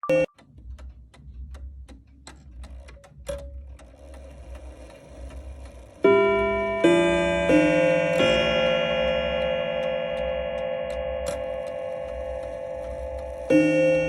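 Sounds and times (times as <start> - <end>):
clock ticking: 0.0 - 14.0
clock chime ringing: 0.1 - 0.3, 5.8 - 14.0
clock mechanism click: 0.1 - 14.0
faint mechanism whirr: 0.2 - 14.0.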